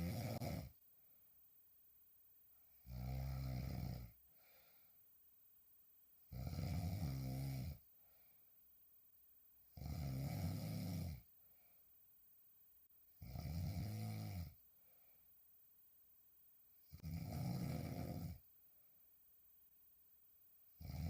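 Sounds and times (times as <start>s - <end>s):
woman snoring loudly: 0.0s - 0.8s, 2.8s - 4.2s, 6.3s - 7.8s, 9.8s - 11.3s, 13.2s - 14.6s, 16.9s - 18.4s, 20.8s - 21.0s
faint breath: 4.2s - 5.2s, 7.9s - 8.7s, 11.4s - 12.0s, 14.7s - 15.5s.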